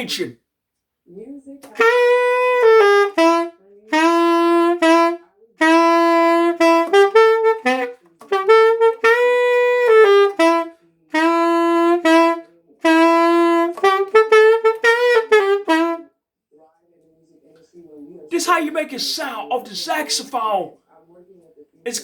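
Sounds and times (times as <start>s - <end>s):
alto saxophone jazz phrases: 1.6s - 16.1s.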